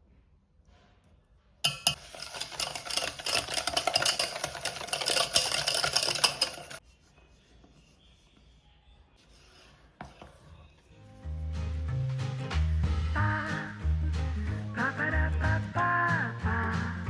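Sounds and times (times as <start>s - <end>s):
utensil scraping mixing bowl: 1.7s - 8.4s.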